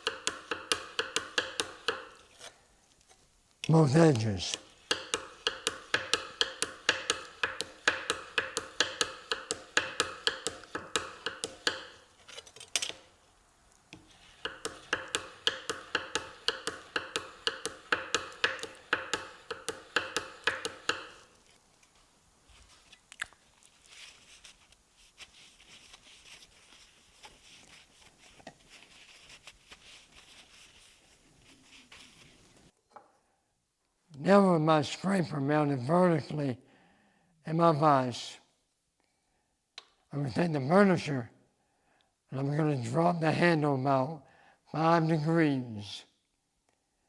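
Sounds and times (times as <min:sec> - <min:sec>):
faint handling sounds: 0:02.2 - 0:04.8, 0:21.2 - 0:33.2.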